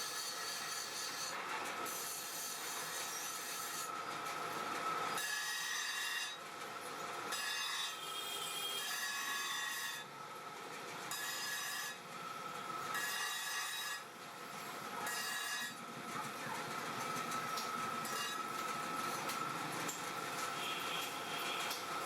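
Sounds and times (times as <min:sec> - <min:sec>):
file rasping on steel: 0:00.0 - 0:04.0, 0:05.2 - 0:06.4, 0:07.3 - 0:10.1, 0:11.1 - 0:12.0, 0:12.9 - 0:14.1, 0:15.0 - 0:15.8, 0:18.0 - 0:18.5.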